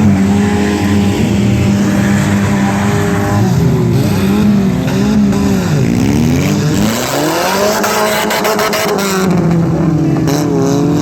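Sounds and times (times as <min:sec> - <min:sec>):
car engines revving: 0:00.0 - 0:11.0.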